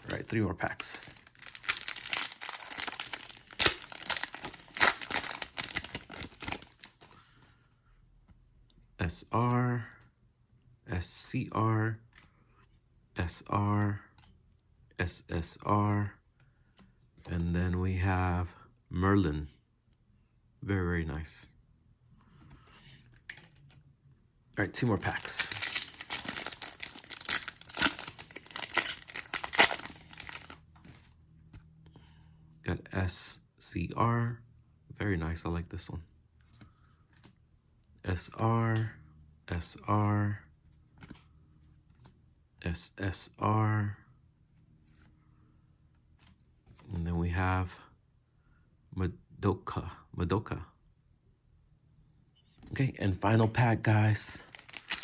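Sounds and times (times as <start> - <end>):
wrapper tearing and crinkling: 0.0 - 7.0, 24.8 - 30.6, 54.4 - 55.0.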